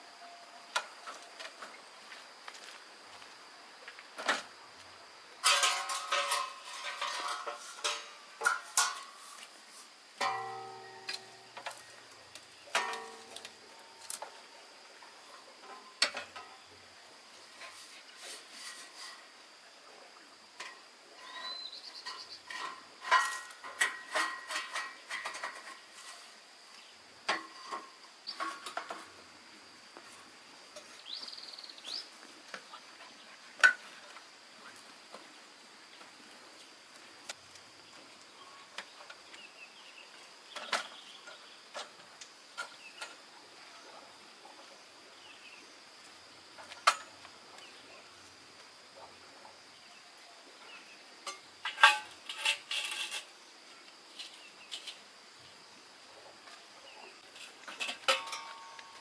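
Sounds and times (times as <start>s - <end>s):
metallic clinks and knocks: 10.2s - 14.2s, 57.7s - 59.0s.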